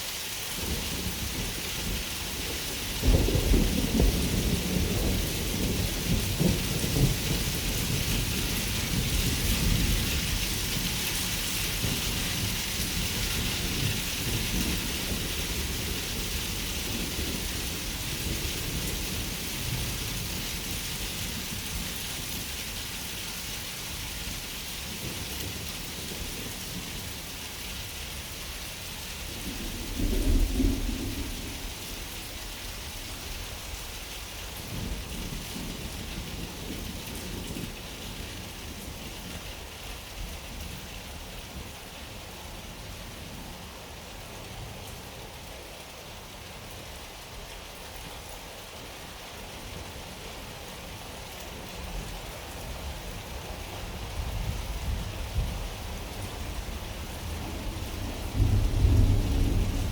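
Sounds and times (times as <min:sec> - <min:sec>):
steady rain: 0:00.0 - 0:59.9
low rumble of thunder: 0:00.6 - 0:22.5, 0:23.9 - 0:43.7, 0:51.8 - 0:59.9
clap of thunder: 0:29.6 - 0:32.3, 0:57.3 - 0:59.9.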